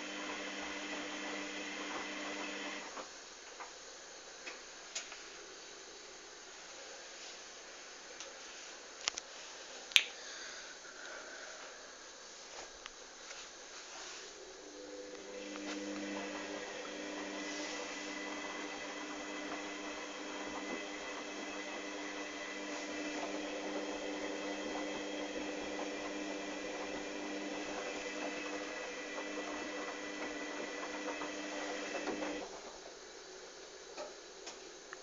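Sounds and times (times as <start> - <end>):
washing machine motor hum: 0.0 - 3.3, 13.2 - 34.4
faint hiss: 1.8 - 18.8.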